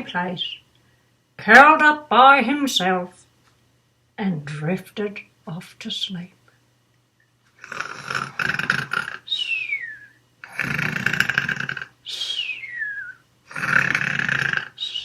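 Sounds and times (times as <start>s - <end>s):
cartoon rasping snore: 7.6s - 9.3s, 10.4s - 12.0s, 13.5s - 15.0s
falling whistle: 9.4s - 10.2s.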